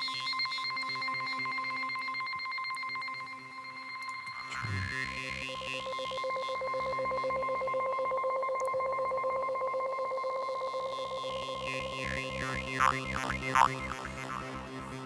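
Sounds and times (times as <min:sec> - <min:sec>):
low synthesizer pulse: 0:11.0 - 0:15.0.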